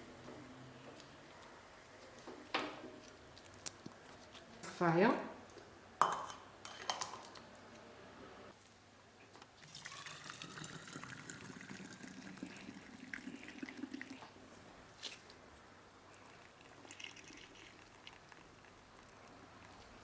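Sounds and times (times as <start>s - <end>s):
liquid pouring into a container: 9.6s - 14.4s, 16.2s - 18.8s.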